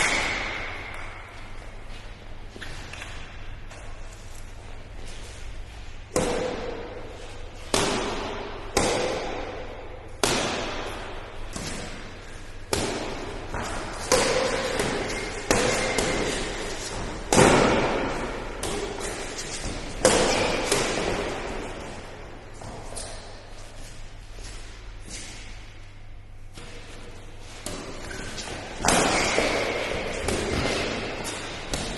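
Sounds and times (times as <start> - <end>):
rackets hitting shuttlecock: 0.0 - 1.4, 6.1 - 7.0, 7.6 - 23.4, 26.6 - 31.9.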